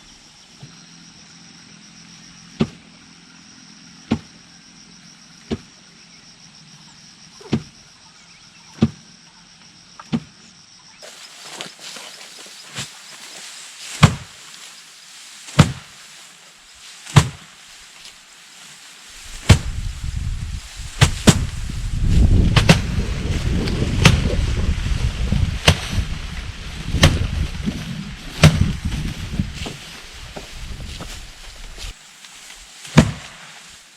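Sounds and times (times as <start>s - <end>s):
low rumbling noise: 19.1s - 32.0s.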